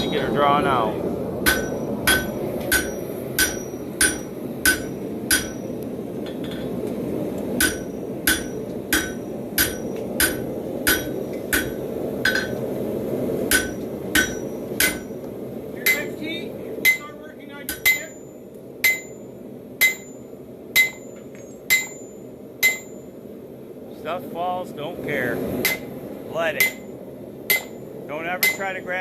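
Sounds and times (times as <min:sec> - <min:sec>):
steady rushing noise: 0:00.0 - 0:20.2, 0:23.8 - 0:29.0
hammer striking metal on anvil: 0:01.4 - 0:06.7, 0:07.6 - 0:12.6, 0:13.5 - 0:15.2, 0:15.8 - 0:16.2, 0:16.8 - 0:17.1, 0:17.7 - 0:23.1, 0:25.6 - 0:25.9, 0:26.6 - 0:27.8, 0:28.4 - 0:28.8.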